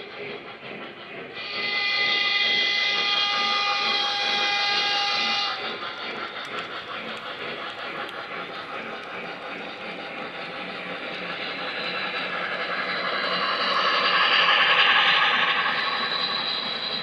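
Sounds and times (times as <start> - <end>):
model train running noise: 0.0 - 17.0
steam whistle: 1.4 - 5.8.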